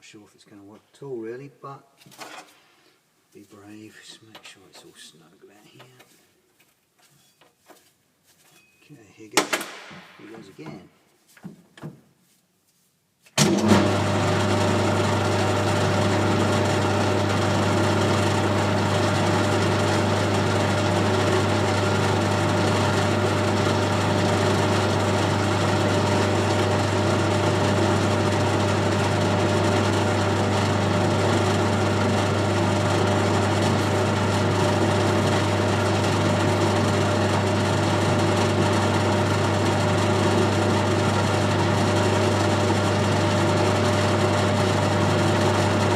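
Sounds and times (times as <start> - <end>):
lathe running with low hum: 13.4 - 45.9.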